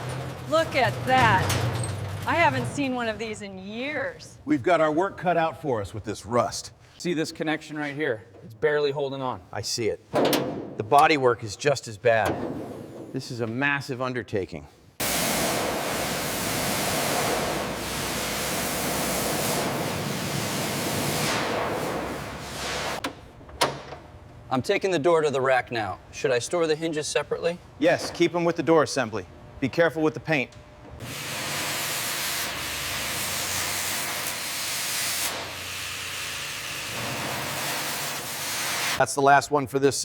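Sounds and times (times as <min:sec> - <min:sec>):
steady rushing hiss: 0:15.0 - 0:23.0.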